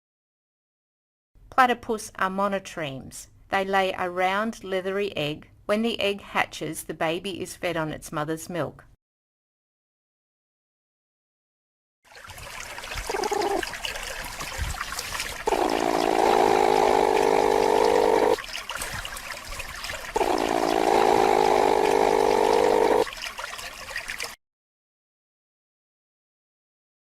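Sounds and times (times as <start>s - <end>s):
running water: 12.1s - 24.4s
platypus growling: 13.1s - 13.6s, 15.4s - 18.4s, 20.2s - 23.1s.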